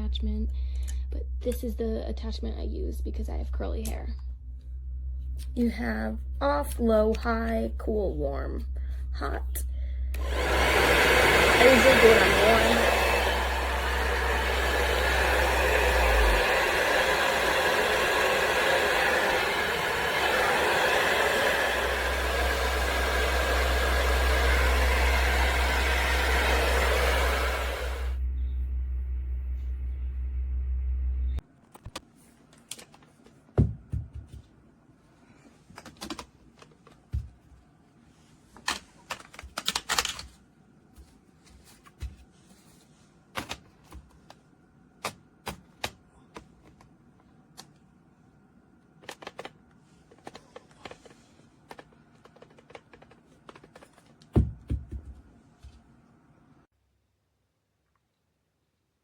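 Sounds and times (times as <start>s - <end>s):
hair dryer running: 10.2s - 28.2s.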